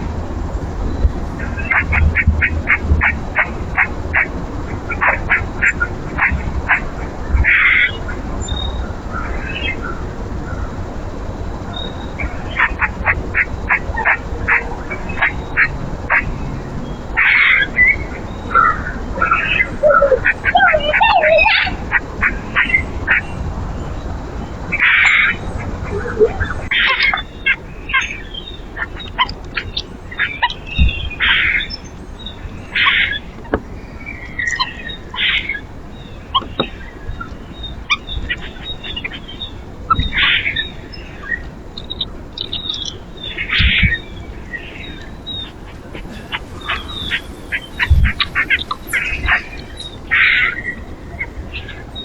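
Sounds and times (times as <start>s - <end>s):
harsh bird calls: 11.7s - 52.0s
high bird chirps: 19.6s - 21.8s, 41.9s - 52.0s.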